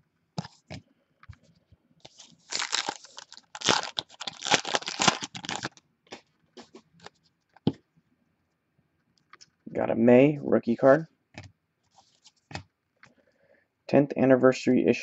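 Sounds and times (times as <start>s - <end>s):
wrapper crinkling and tearing: 2.1s - 5.8s.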